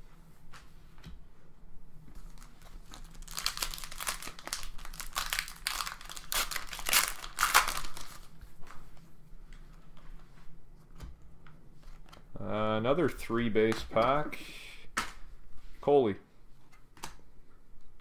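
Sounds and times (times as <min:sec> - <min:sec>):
wrapper tearing and crinkling: 0:02.2 - 0:08.4.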